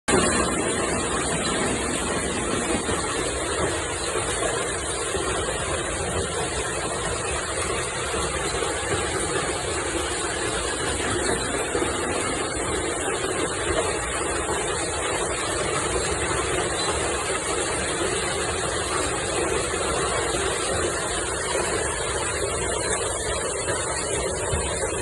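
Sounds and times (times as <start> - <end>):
heavy rain downpour: 0.1 - 25.0.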